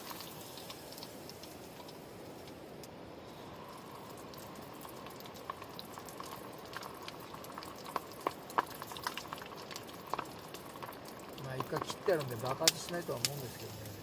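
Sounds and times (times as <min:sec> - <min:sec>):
deep-frying bubbling hiss: 0:00.0 - 0:14.0
oil popping and spitting: 0:03.6 - 0:14.0.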